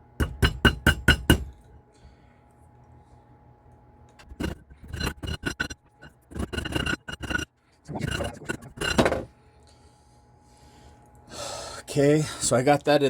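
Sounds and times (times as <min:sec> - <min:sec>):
metal scraping and clinking: 0:04.2 - 0:09.3
rasping file strokes: 0:04.2 - 0:09.3.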